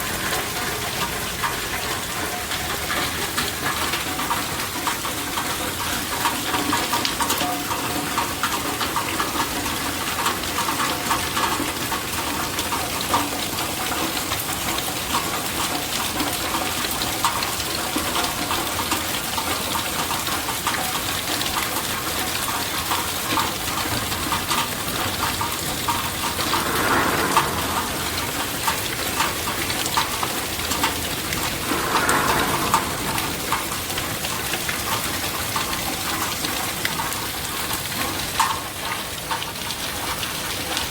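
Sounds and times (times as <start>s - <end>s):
rain falling steadily: 0.0s - 40.9s.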